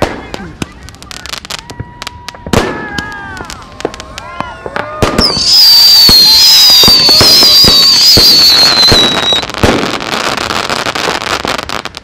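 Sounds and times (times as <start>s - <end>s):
fireworks bangs and crackles: 0.0s - 12.0s
high falling whistle: 5.2s - 9.5s.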